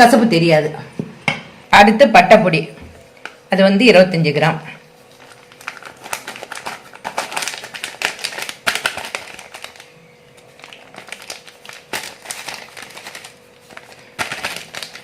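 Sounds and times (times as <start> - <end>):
spoon clicking and powder crinkling: 5.1 - 15.0.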